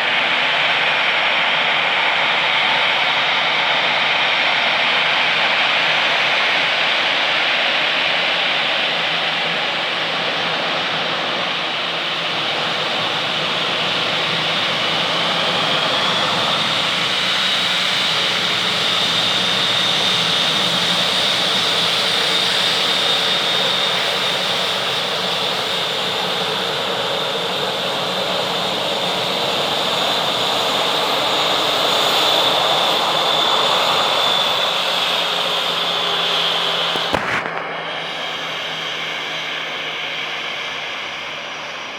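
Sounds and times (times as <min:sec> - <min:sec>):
sharp click: 0:37.0 - 0:37.8.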